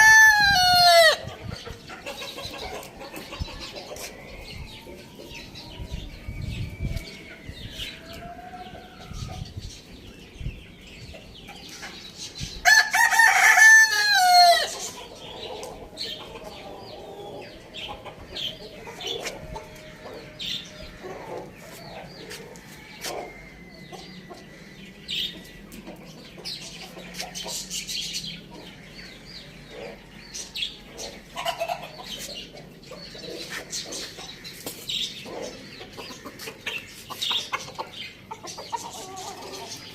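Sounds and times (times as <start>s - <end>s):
chickens clucking: 0.0s - 12.6s, 13.5s - 39.9s
rooster crowing: 12.6s - 14.7s.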